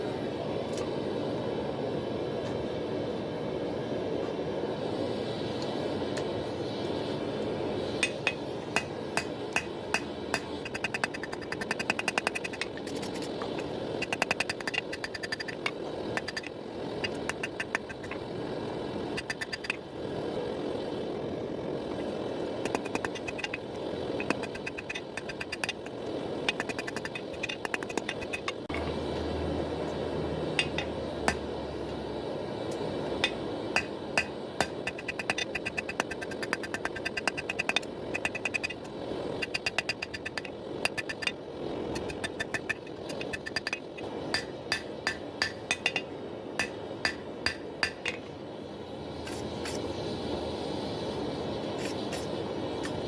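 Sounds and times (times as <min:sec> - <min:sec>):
hammer striking steel on anvil: 0:08.0 - 0:11.0, 0:44.4 - 0:48.2.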